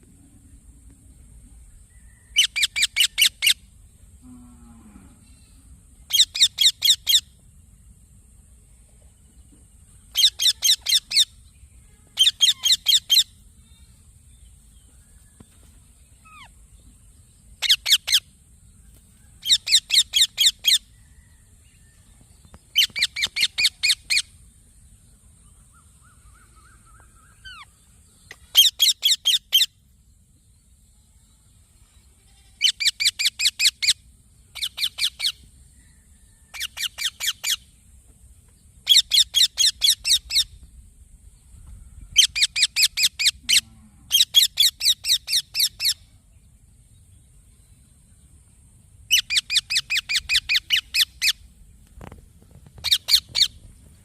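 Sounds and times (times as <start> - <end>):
parrot chirping: 6.1 - 7.3, 10.1 - 11.4, 12.2 - 13.3, 17.6 - 18.2, 22.8 - 24.3, 49.1 - 51.4, 52.8 - 53.6.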